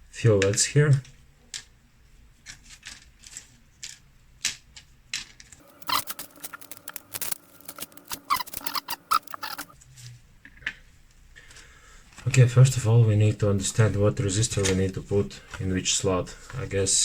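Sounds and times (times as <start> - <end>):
small parts clicking and rattling: 2.4 - 9.8.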